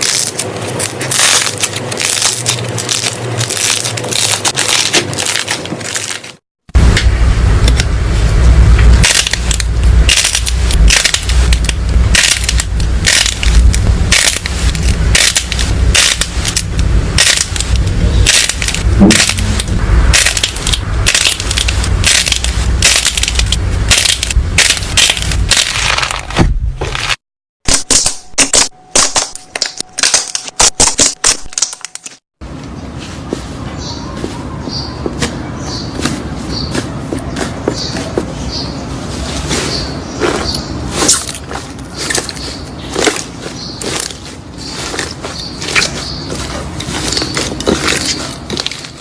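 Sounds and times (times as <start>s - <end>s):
crunchy slime crackling: 0.0s - 6.4s, 9.0s - 26.4s, 40.2s - 49.0s.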